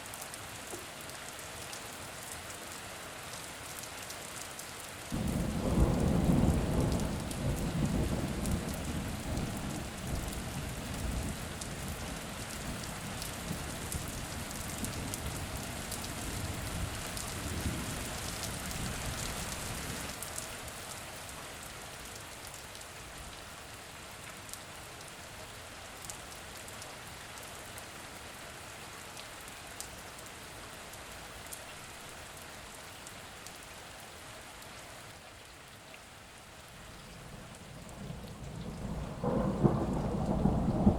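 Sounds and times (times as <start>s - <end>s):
steady rain pattering: 0.0s - 40.9s
rolling thunder rumble: 5.2s - 10.4s, 37.0s - 40.9s.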